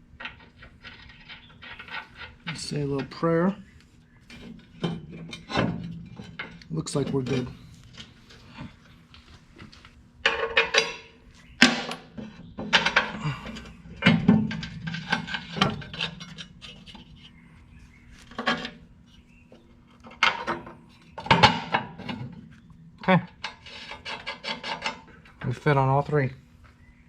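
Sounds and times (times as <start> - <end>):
steady low hum: 0.0 - 27.0
steel parts clanking and scraping: 0.1 - 26.1.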